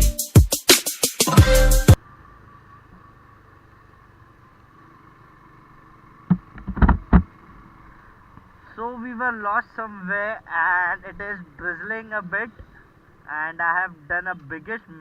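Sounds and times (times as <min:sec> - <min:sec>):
motorcycle riding: 0:02.0 - 0:15.0
sharp knocks: 0:06.3 - 0:07.3.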